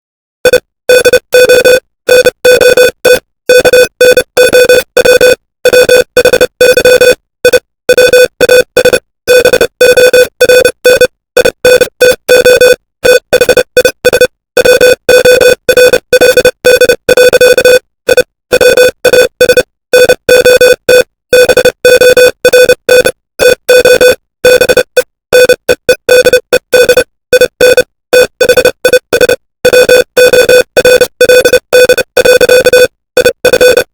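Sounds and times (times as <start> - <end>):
morse code beeps: 0.4 - 33.9.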